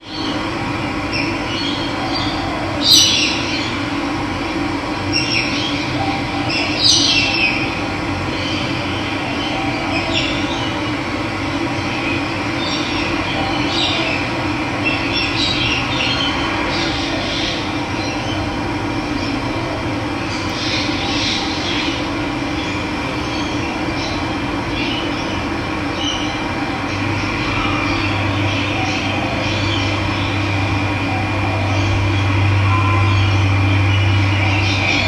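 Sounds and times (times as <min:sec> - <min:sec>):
birds chirping: 0:20.2 - 0:35.0.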